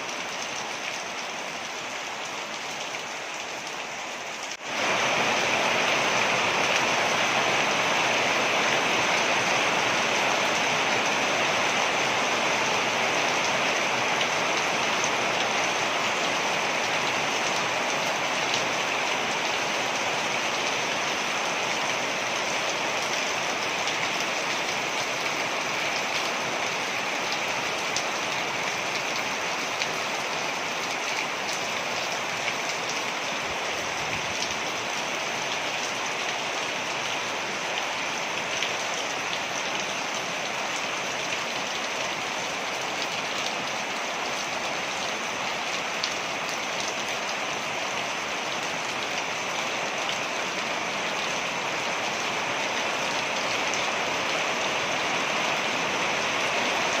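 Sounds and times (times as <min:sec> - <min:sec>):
waterfall rushing: 0:04.2 - 0:16.9.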